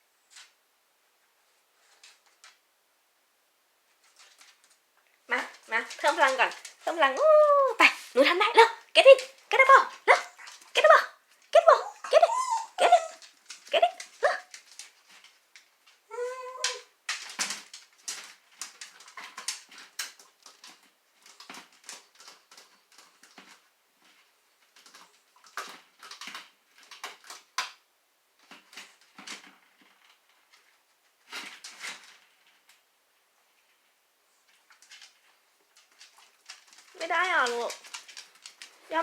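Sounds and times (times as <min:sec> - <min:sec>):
dog whining: 0:11.7 - 0:14.5, 0:16.1 - 0:16.9.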